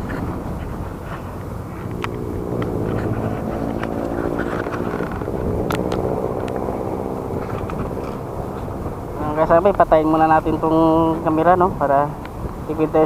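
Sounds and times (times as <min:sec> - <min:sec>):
passing motor engine drone: 0:00.0 - 0:13.0
wind buffeting microphone: 0:00.0 - 0:13.0.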